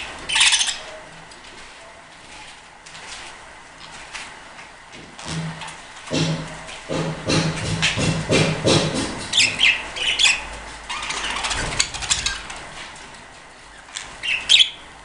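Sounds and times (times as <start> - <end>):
budgerigars squawking and chirping: 0.3 - 0.9, 9.3 - 12.5, 14.0 - 14.8.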